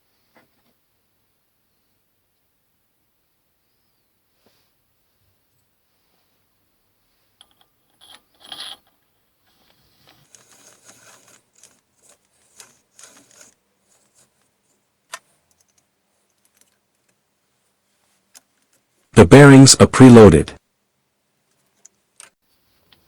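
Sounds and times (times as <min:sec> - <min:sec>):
small metal parts clicking: 0:15.5 - 0:17.2.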